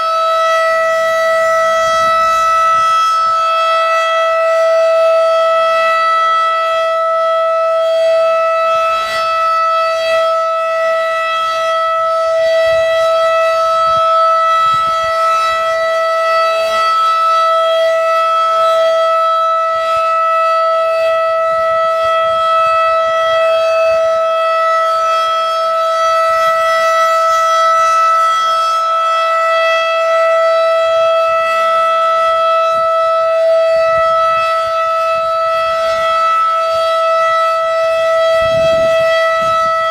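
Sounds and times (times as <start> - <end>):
mechanical siren steady tone: 0.0 - 39.9.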